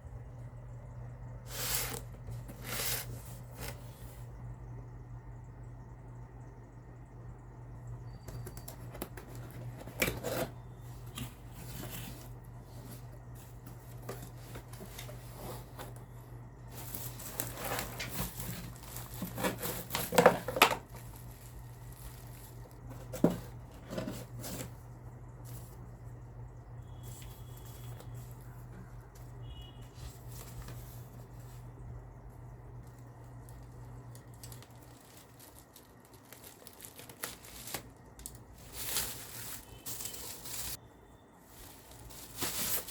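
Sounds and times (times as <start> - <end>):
low electrical hum: 0.0 - 42.9
packaging rustling and tearing: 1.5 - 4.1, 8.4 - 24.8, 32.9 - 40.8, 41.5 - 42.9.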